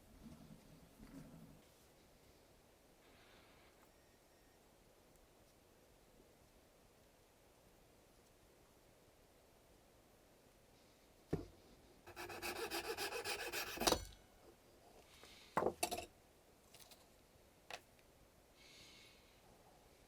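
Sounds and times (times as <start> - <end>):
rapid scraping rasps: 12.1 - 14.0.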